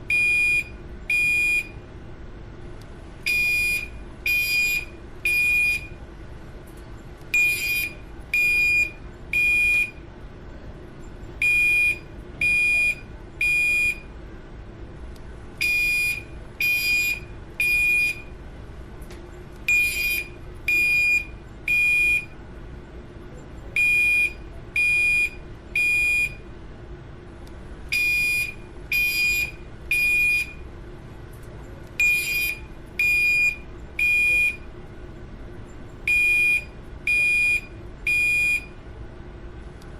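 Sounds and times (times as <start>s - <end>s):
fire alarm beeping: 0.1s - 1.8s, 3.3s - 6.0s, 7.4s - 10.0s, 11.4s - 14.1s, 15.6s - 18.3s, 19.7s - 22.4s, 23.8s - 26.4s, 27.9s - 30.6s, 32.0s - 34.7s, 36.0s - 38.8s.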